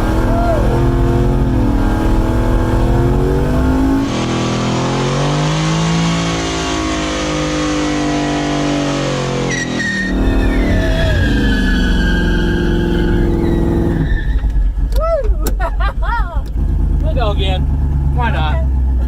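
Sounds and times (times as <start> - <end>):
car engine revving hard: 0.0 - 14.0
high tire squeal: 6.4 - 14.8.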